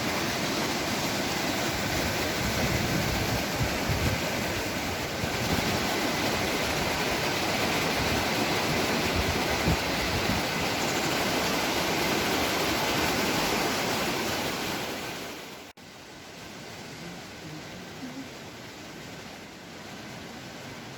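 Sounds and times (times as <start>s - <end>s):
waterfall rushing: 0.0s - 20.9s.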